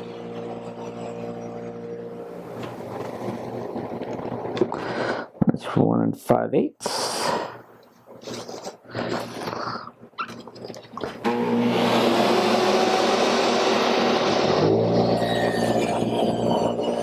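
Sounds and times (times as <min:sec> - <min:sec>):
power tool motor humming: 0:11.2 - 0:17.0.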